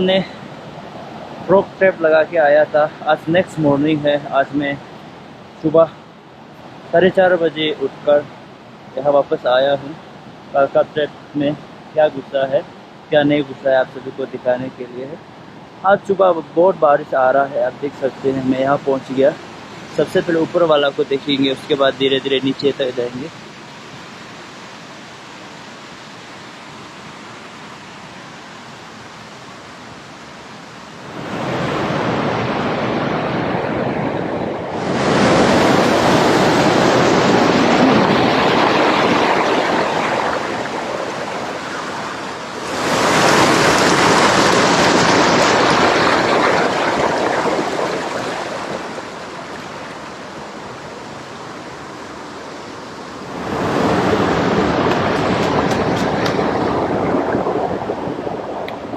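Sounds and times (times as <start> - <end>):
heavy rain falling: 38.0 - 49.5.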